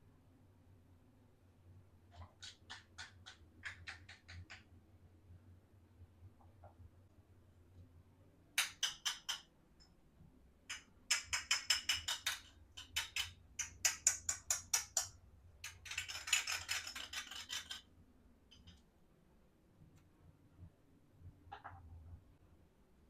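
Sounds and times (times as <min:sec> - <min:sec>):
plastic toy pieces clicking: 0:10.7 - 0:17.9.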